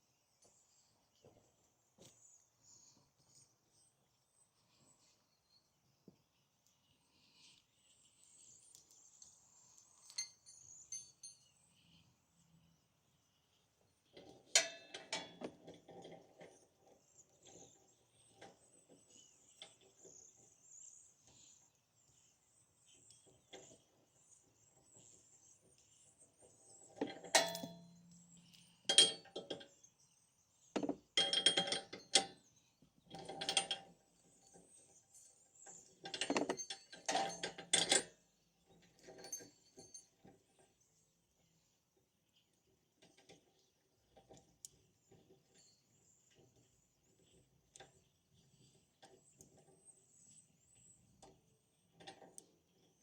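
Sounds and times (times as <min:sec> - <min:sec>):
metallic tool clinks: 0:10.0 - 0:11.6, 0:27.3 - 0:27.9.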